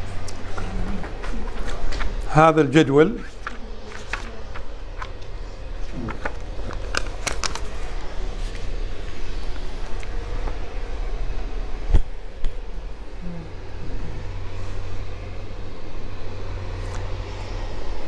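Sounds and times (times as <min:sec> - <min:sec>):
low room hum: 0:00.0 - 0:18.0
handling clicks and rustling: 0:05.9 - 0:08.0.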